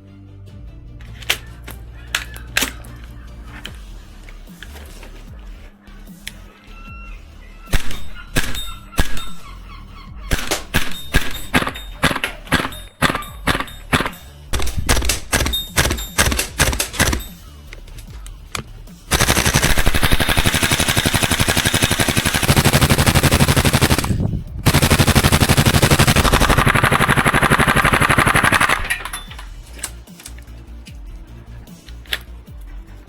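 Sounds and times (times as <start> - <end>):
airsoft gun firing: 10.3 - 17.3, 19.1 - 28.9.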